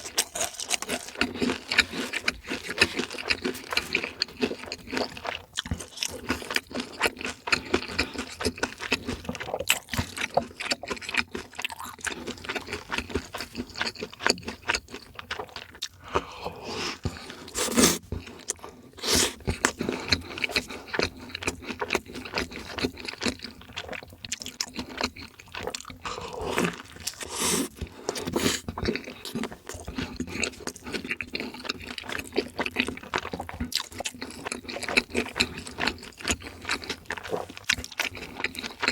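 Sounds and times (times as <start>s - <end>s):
chewing and crunching food: 0.0s - 38.9s.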